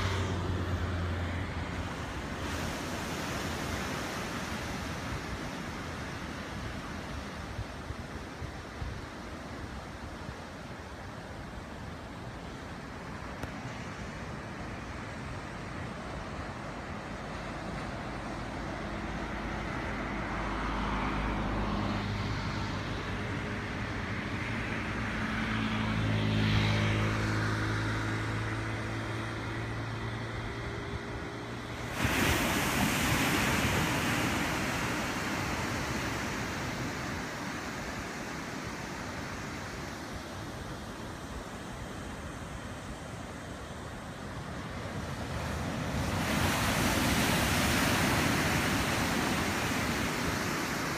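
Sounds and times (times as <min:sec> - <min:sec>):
vehicle engine hum: 0:00.0 - 0:02.4, 0:17.3 - 0:32.0
surf washing on beach: 0:00.0 - 0:50.9.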